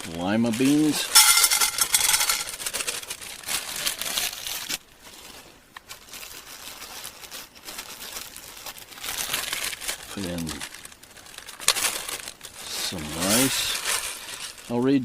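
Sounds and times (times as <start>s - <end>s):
beans pouring into a pot: 0.8s - 2.6s.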